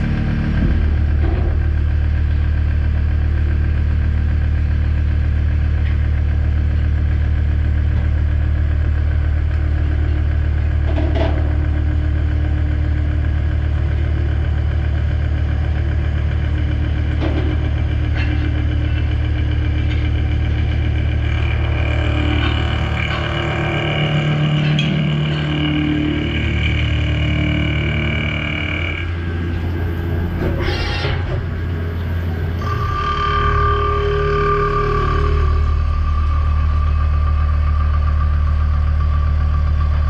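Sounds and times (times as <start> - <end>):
machine drone: 0.0 - 40.0
metal cutting tone: 21.3 - 36.8.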